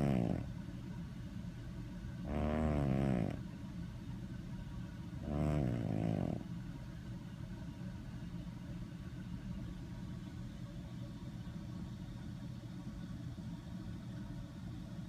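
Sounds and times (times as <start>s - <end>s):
animal snoring: 0.0s - 0.6s, 2.2s - 3.4s, 5.2s - 6.5s.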